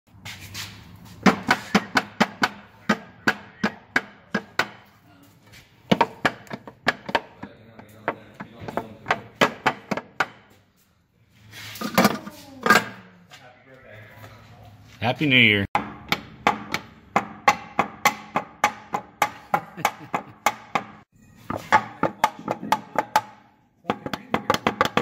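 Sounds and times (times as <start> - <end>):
sharp knocks: 5.9 - 10.6, 15.8 - 25.0.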